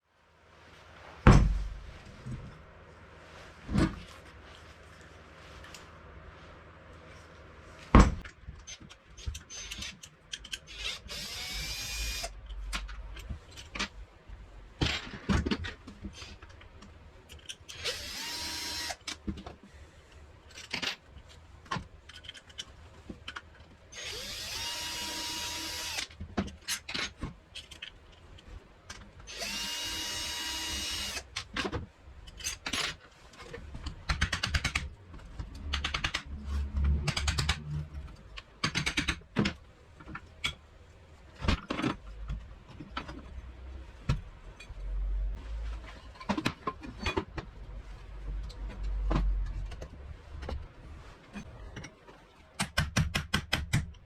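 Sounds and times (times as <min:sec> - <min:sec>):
knocks and clatter of tools: 0:14.7 - 0:17.7, 0:31.4 - 0:40.6, 0:45.6 - 0:47.6.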